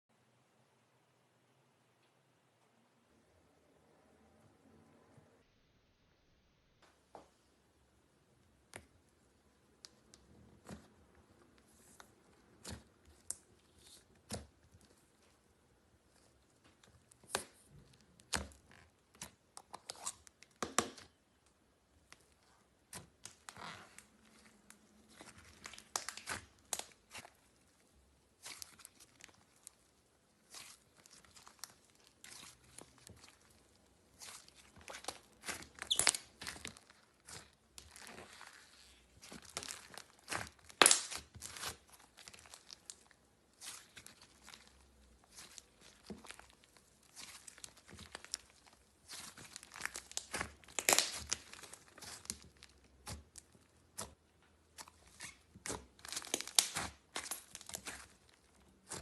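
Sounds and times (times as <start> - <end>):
slime crackling and popping: 22.1 - 59.0
slime snapping: 39.4 - 41.8, 49.1 - 52.4, 56.1 - 58.0.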